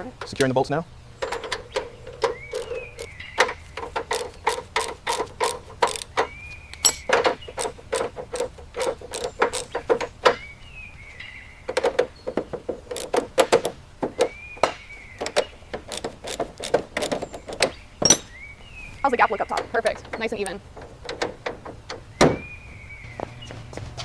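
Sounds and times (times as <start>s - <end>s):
ratchet wrench clicking: 2.2s - 3.1s, 3.8s - 9.8s, 12.9s - 13.2s, 15.3s - 17.2s.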